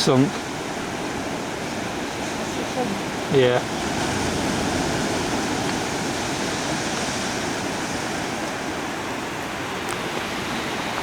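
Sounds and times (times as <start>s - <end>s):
waves washing onto beach: 0.0s - 11.0s.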